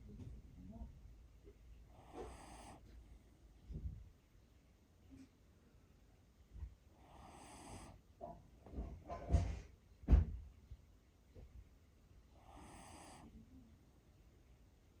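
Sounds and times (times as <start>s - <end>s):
dog snoring: 1.9s - 3.0s, 7.0s - 8.0s, 12.3s - 13.4s
dog snorting: 1.9s - 3.0s, 7.0s - 8.0s, 12.5s - 13.3s.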